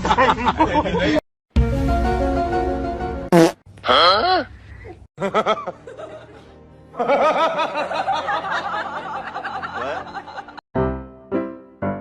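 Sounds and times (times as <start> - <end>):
background music: 1.5 - 3.3, 5.3 - 12.0.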